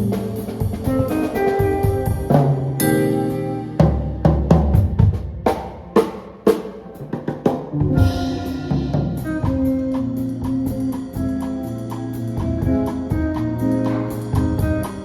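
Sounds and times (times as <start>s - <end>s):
electric guitar: 0.0s - 15.0s
live rock band playing: 0.0s - 15.0s
low bass notes: 7.7s - 15.0s.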